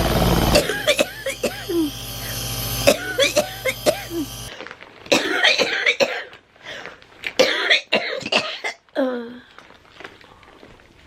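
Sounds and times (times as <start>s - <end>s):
person coughing hard: 0.5s - 4.5s, 5.1s - 6.3s, 7.4s - 8.8s.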